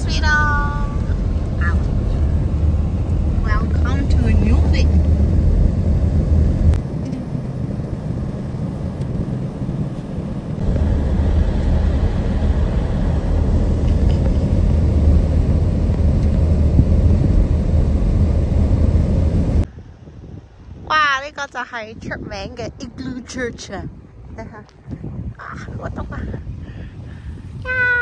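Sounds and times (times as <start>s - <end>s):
car interior road noise: 0.0s - 19.7s.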